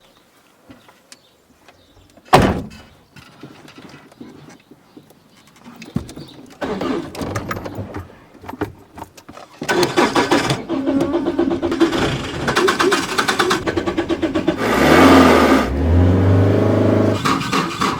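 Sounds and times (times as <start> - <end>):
loud thump: 2.4 - 2.8
starter motor cranking engine: 6.6 - 7.4, 9.7 - 17.9.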